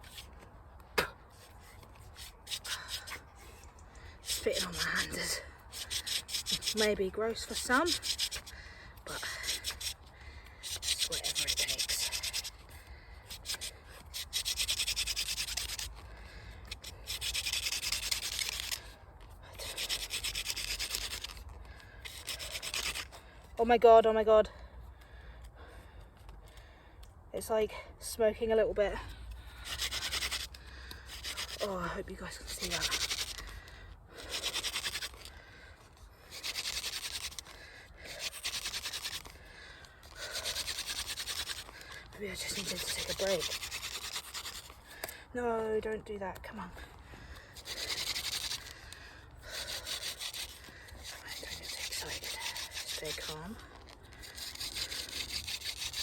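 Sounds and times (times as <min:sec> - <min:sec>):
wooden spindle grinding in board: 0:01.4 - 0:12.6, 0:13.3 - 0:16.0, 0:16.6 - 0:19.0, 0:19.6 - 0:23.2, 0:29.5 - 0:35.4, 0:36.2 - 0:45.2, 0:47.3 - 0:56.0.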